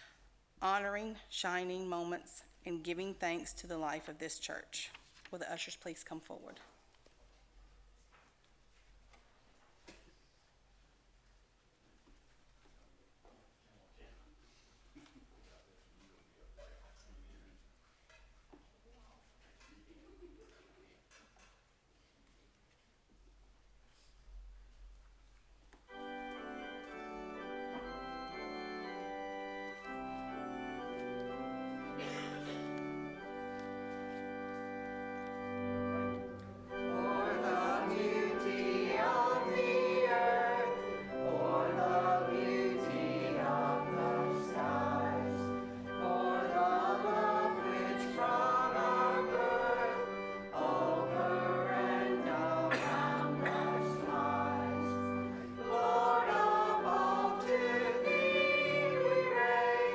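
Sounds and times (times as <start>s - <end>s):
organ playing chords: 25.9s - 59.9s
choir singing: 35.5s - 59.9s.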